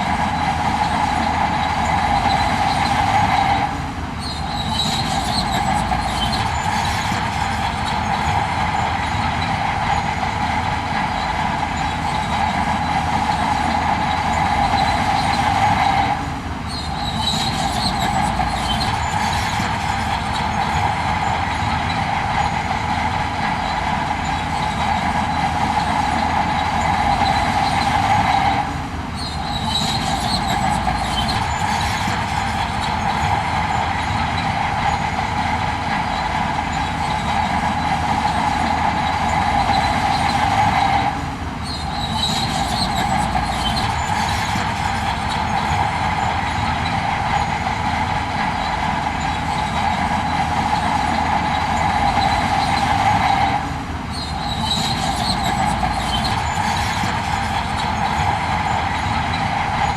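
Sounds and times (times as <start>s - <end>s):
low engine rumble: 0.0s - 59.9s
machinery mechanical drone: 0.0s - 59.9s
sustained squealing tone: 0.7s - 10.3s, 11.0s - 22.8s, 29.2s - 33.7s, 38.5s - 59.9s.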